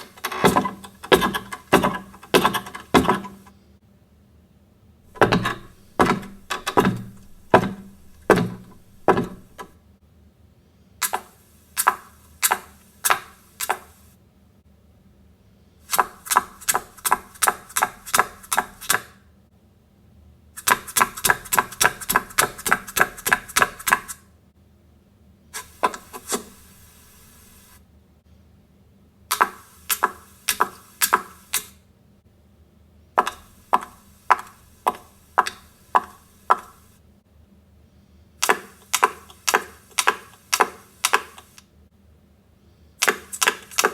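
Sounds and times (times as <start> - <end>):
clicking and knocking on hard surface: 0.0 - 3.5, 5.1 - 9.7, 20.6 - 24.2, 25.6 - 27.6, 33.2 - 36.8.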